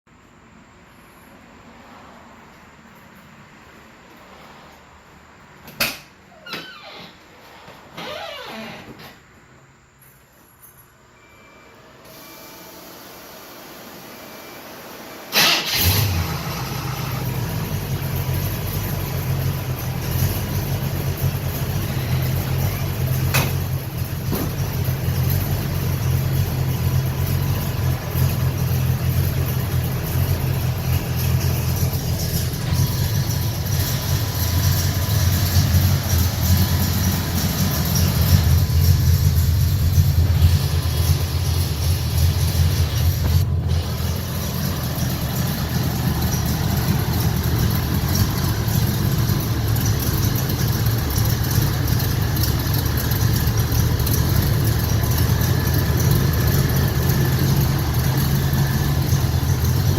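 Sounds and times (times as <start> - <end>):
engine starting and idling: 15.2 - 59.9.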